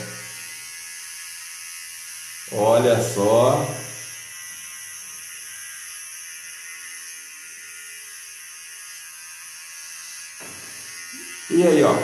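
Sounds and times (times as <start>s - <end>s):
electric hair clipper buzzing: 0.0s - 12.0s.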